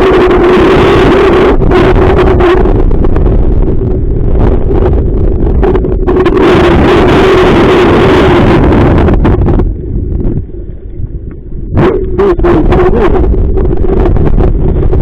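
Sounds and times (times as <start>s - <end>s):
steady drone: 0.0s - 14.7s
wind buffeting microphone: 0.0s - 15.0s.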